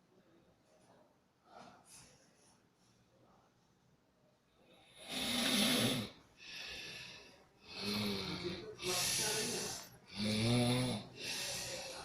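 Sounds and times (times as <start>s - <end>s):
person snoring: 4.9s - 6.2s, 7.6s - 12.0s.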